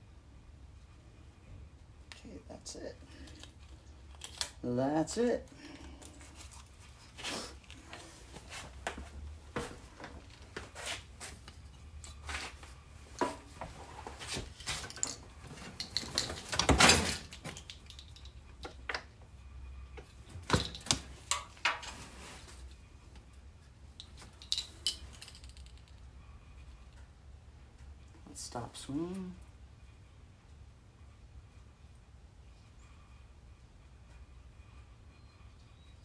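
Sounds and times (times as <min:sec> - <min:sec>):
low steady hum: 0:00.0 - 0:36.0
tools and metal parts clinking: 0:13.2 - 0:18.8, 0:20.3 - 0:22.0, 0:24.0 - 0:26.0.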